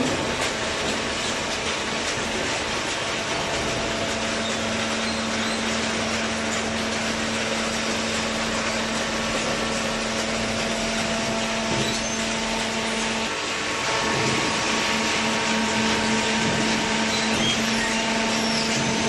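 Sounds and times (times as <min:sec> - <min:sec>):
baler machine hum: 0:00.0 - 0:19.0.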